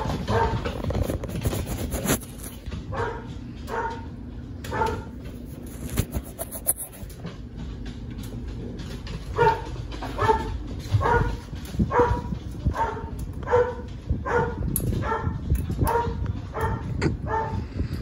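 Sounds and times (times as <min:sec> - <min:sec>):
dog barking: 0:00.0 - 0:00.7, 0:02.9 - 0:04.1, 0:04.7 - 0:05.1, 0:09.3 - 0:17.6.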